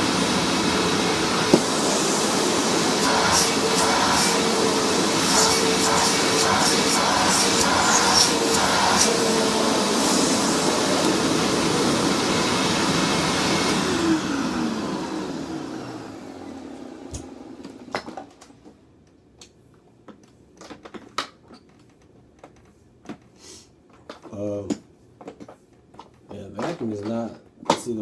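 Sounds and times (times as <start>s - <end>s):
upright vacuum running: 0.0s - 18.4s.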